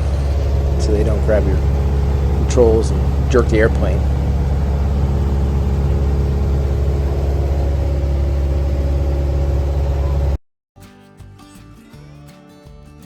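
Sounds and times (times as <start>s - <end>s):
propeller plane engine droning: 0.0s - 10.4s.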